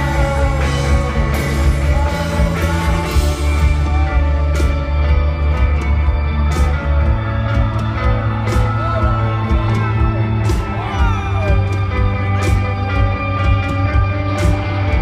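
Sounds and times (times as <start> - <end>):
electric guitar: 0.0 - 15.0
heavy bass: 0.0 - 15.0
crowd shouting: 6.0 - 12.6.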